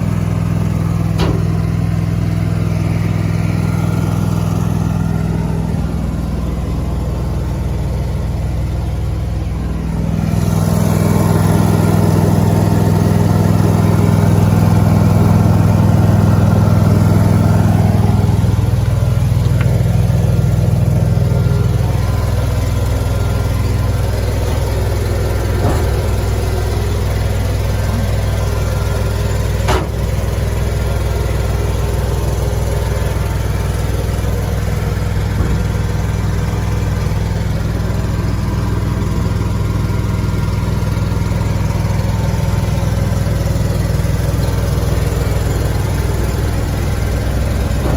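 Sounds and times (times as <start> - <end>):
engine running: 0.0 - 47.9.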